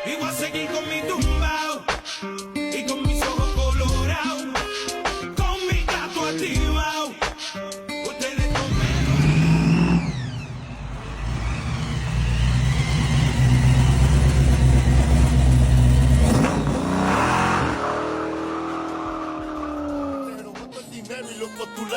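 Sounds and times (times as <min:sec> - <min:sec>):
car engine accelerating hard: 0:08.6 - 0:21.2.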